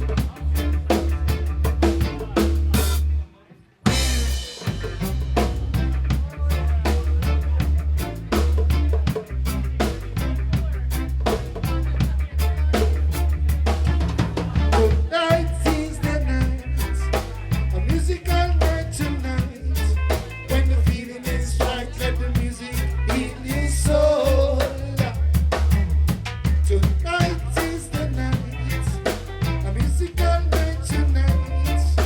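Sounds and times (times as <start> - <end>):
heavy pulsing bass line: 0.0 - 3.2, 3.9 - 32.0
live ska band playing: 0.0 - 32.0
drum kit hits: 3.9 - 6.1.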